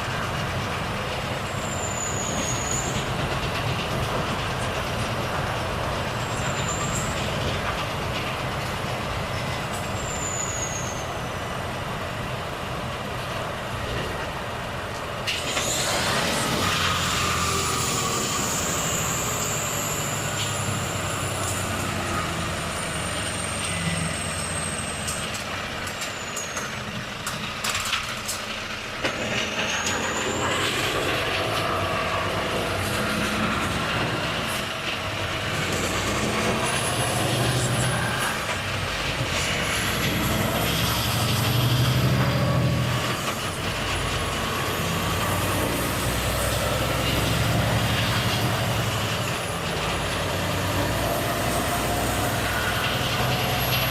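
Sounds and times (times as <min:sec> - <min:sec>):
tyre and road noise: 0:00.0 - 0:53.9
truck diesel engine running: 0:11.2 - 0:53.9.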